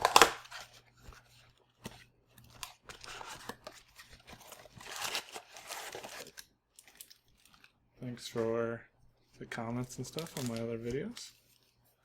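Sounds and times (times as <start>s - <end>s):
packaging tearing and crinkling: 0.0s - 0.7s, 2.5s - 7.7s, 10.1s - 11.1s.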